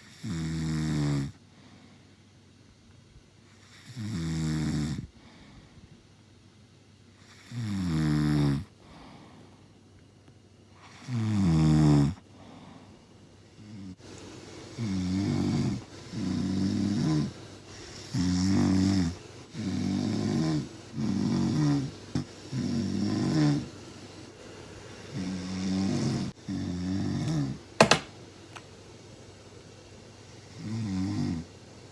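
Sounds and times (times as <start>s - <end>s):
loud pitched snoring: 0.0s - 1.4s, 3.6s - 5.1s, 7.2s - 8.7s, 10.8s - 12.2s, 14.8s - 24.1s, 25.0s - 27.6s, 30.5s - 31.6s.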